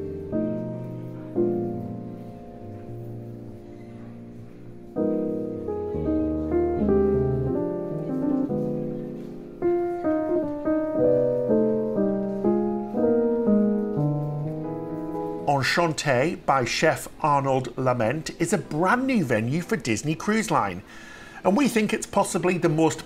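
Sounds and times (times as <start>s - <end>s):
slow piano melody: 0.0s - 17.7s.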